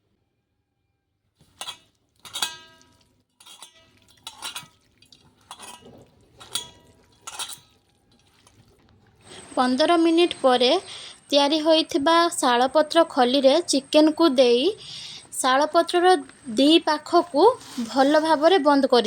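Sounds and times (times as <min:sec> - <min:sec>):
metal utensils clinking on bowl: 0:01.4 - 0:08.7.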